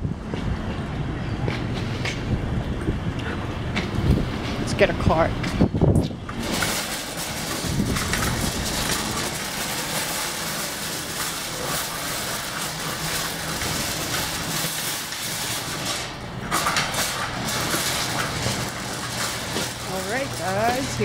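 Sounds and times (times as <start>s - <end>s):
wind noise on microphone: 0.0s - 9.3s
metal shopping cart rattling: 6.3s - 21.0s.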